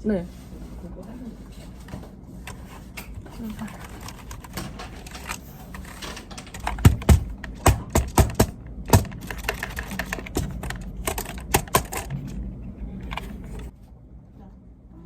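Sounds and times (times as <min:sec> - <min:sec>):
typing on computer keyboard: 0:02.5 - 0:12.3.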